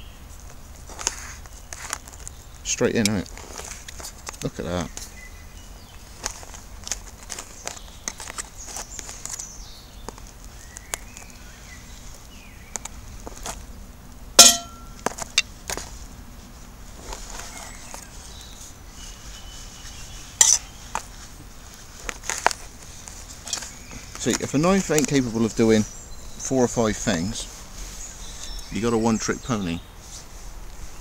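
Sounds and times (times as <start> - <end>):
knife and cookware clinking: 14.4 - 14.9, 20.4 - 20.6
sharp metallic strikes ringing: 14.4 - 15.0.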